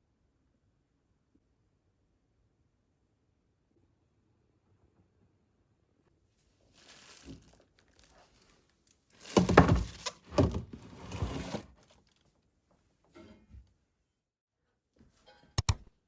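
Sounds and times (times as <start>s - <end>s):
crinkling and rustling: 6.3s - 13.3s.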